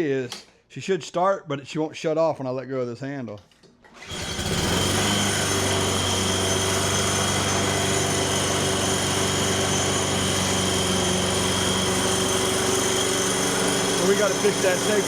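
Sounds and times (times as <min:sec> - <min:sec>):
lawn mower engine running: 0:04.0 - 0:15.0.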